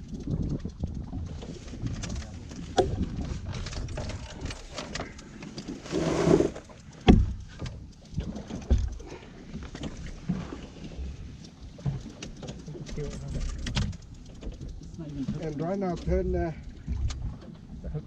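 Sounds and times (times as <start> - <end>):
fishing gear knocking on boat: 5.9 - 7.7.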